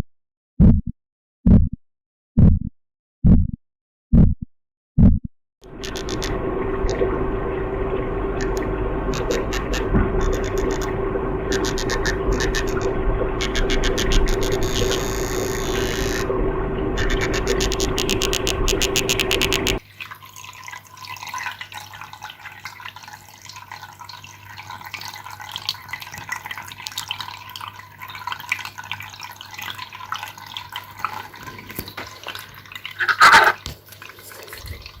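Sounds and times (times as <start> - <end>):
loud rapid pulsing: 5.6 - 19.8
water splash: 5.6 - 19.8
water dripping: 5.6 - 35.0.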